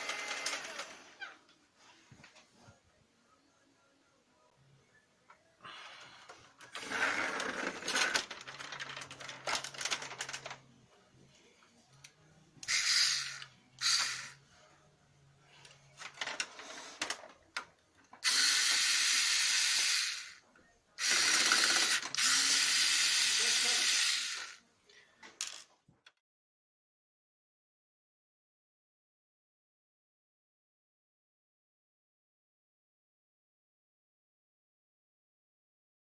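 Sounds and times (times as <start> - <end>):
printer mechanism ratcheting grind: 0.0 - 1.0, 6.7 - 10.5, 21.0 - 24.6.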